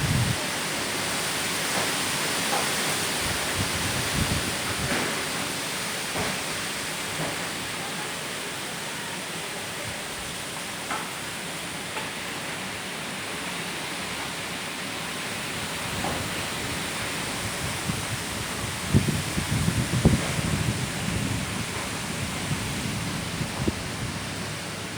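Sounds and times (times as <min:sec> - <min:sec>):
wind storm rushing hiss: 0:00.0 - 0:07.8, 0:13.1 - 0:24.9.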